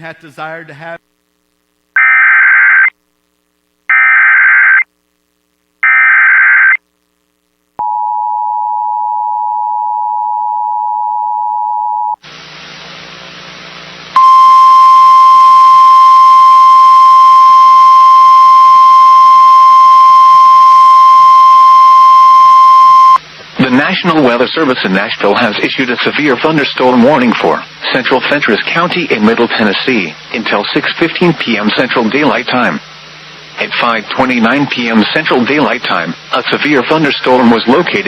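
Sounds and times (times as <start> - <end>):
loud steady single tone: 7.8 - 12.3, 14.1 - 23.2
two-tone attention signal: 14.2 - 23.2.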